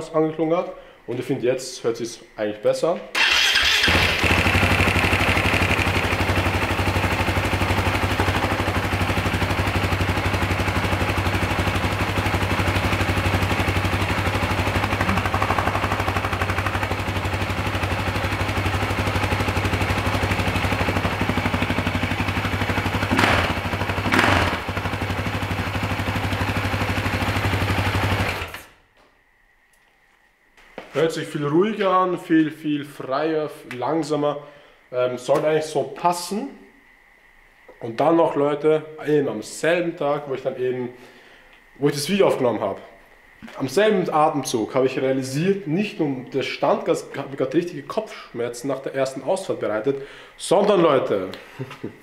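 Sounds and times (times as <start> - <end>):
motorcycle engine idling: 3.2 - 28.6.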